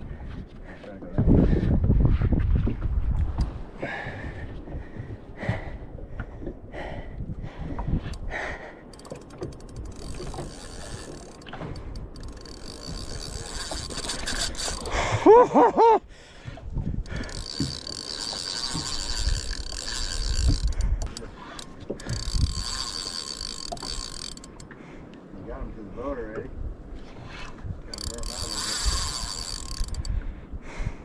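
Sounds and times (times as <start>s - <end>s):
fishing reel ratcheting: 8.9s - 15.2s, 17.0s - 24.7s, 27.9s - 30.2s.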